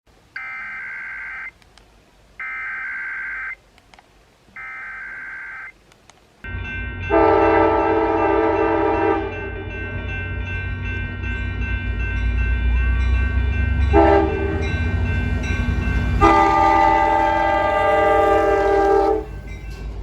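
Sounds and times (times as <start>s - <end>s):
warbling data tones: 0.4s - 1.5s, 2.4s - 3.6s, 4.6s - 5.8s.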